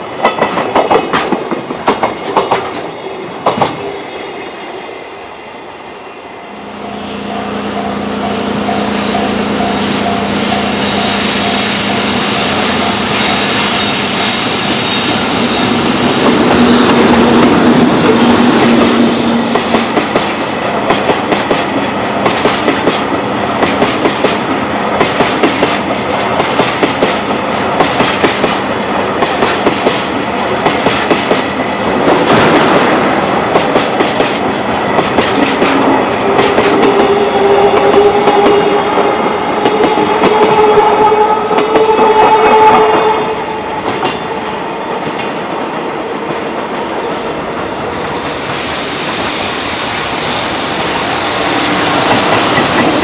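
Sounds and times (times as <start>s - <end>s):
train wheels clacking over rail joints: 0.0s - 4.0s, 14.6s - 43.1s, 51.0s - 53.0s.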